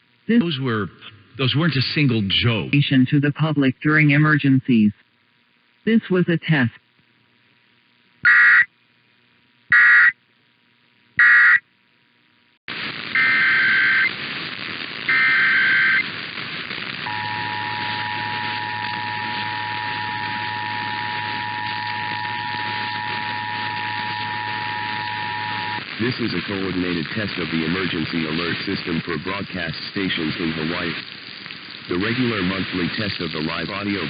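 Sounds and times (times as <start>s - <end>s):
radio static hiss: 0.0s - 34.0s
digital data bursts: 8.2s - 8.7s, 9.7s - 10.2s, 11.2s - 11.6s, 12.9s - 34.0s
two-tone attention signal: 17.1s - 25.8s.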